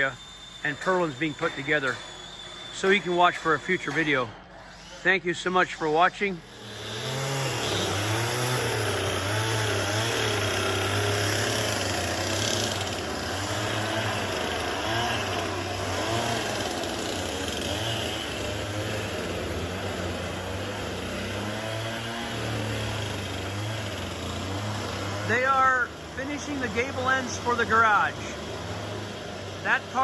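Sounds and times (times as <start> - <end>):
log building work noise: 0.0 - 30.0
engine droning: 6.2 - 30.0.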